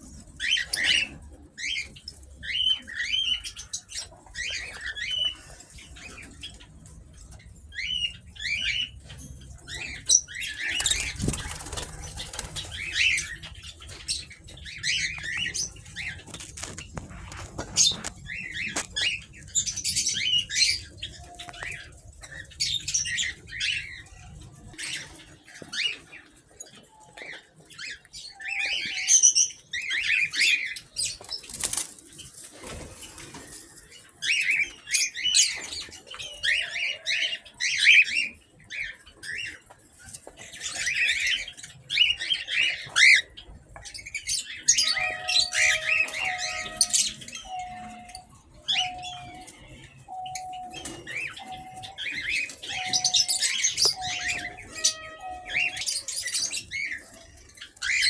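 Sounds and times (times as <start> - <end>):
birds chirping and squawking: 0.0 - 58.0
wings flapping: 10.8 - 13.0.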